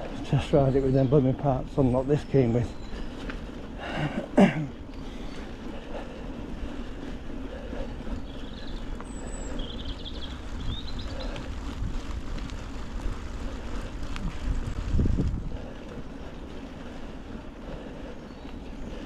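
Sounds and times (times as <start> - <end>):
bike tyres rumbling on mud: 0.0 - 19.0
wind on microphone: 8.1 - 16.5.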